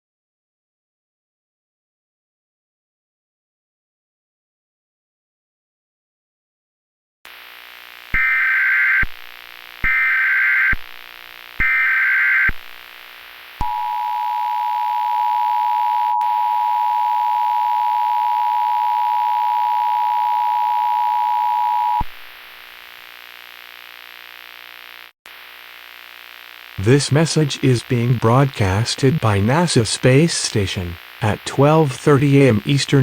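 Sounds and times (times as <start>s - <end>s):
faint hum and hiss: 22.2s - 33.0s.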